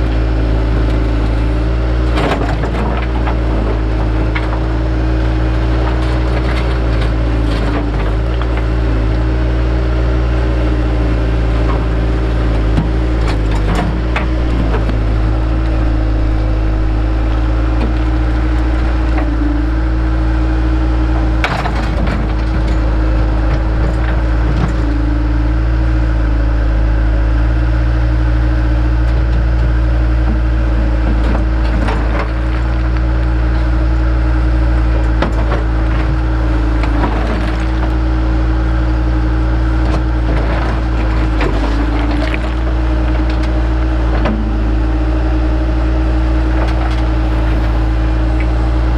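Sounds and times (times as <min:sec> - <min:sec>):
heavy machinery engine running: 0:00.0 - 0:48.9
sharp knocks and scrapes: 0:11.5 - 0:20.0.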